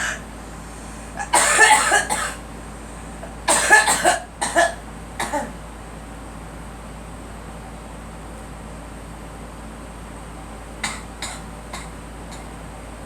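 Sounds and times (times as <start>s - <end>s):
girl coughing: 1.2s - 2.4s, 3.5s - 5.6s, 10.8s - 11.9s.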